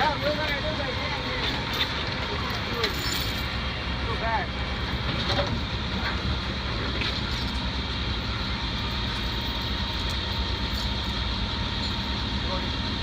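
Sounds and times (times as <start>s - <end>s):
heavy truck engine running: 0.0s - 13.0s.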